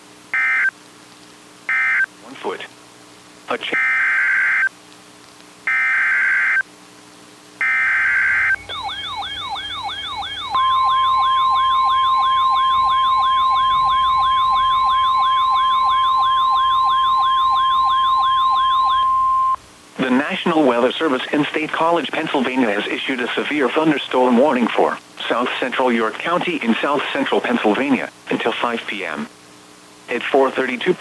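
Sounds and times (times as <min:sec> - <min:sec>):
steady single-pitch alert tone: 0:07.6 - 0:19.6
sweeping siren-like alert tone: 0:07.6 - 0:19.6
electronic data bursts: 0:07.6 - 0:20.4.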